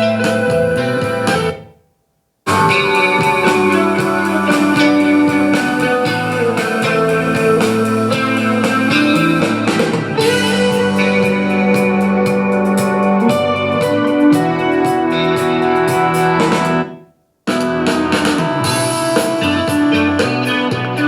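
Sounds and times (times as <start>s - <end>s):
instrumental guitar music from speaker: 0.0s - 1.6s, 2.5s - 21.0s.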